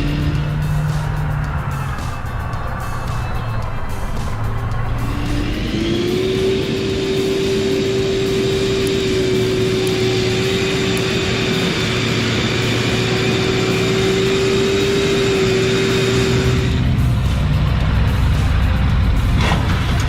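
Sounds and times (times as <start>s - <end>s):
engine droning at high speed: 0.0s - 20.0s.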